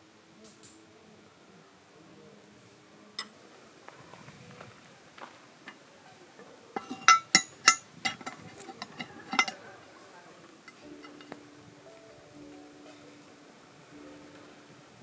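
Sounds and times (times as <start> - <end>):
quiet music: 0.0 - 15.0
metal lid clinking: 6.8 - 9.7.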